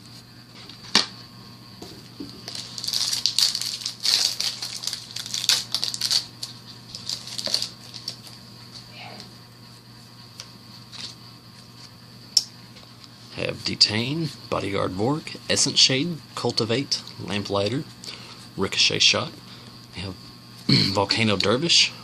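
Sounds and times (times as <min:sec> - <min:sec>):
wrapper crinkling: 0:02.4 - 0:08.4.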